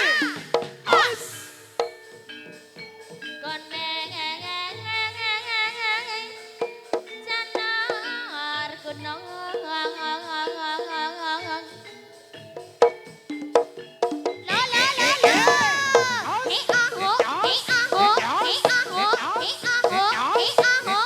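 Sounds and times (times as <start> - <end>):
hand drum strokes: 0.0 - 3.2, 13.5 - 21.0
held ringing tones: 0.0 - 4.6, 5.2 - 21.0
lead melody with vibrato: 14.5 - 21.0.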